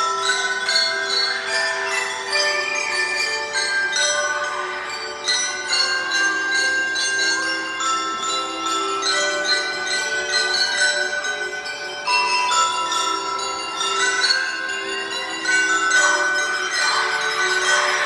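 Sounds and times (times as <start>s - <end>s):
bell lyres playing a melody: 0.0s - 18.0s.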